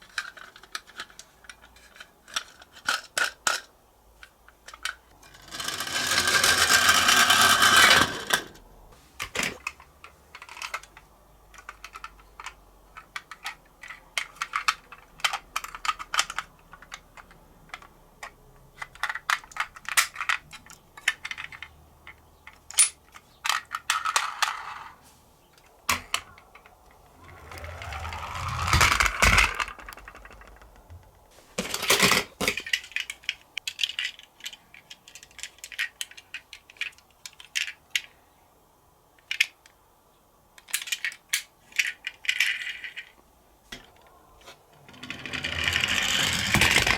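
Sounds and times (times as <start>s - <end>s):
toy cars clicking and rattling: 0.0s - 8.6s, 9.2s - 25.0s, 25.9s - 38.2s, 39.2s - 39.8s, 40.6s - 46.9s
toy car rolling down a slope: 4.8s - 8.6s, 23.5s - 25.0s, 26.6s - 32.4s, 44.7s - 46.9s.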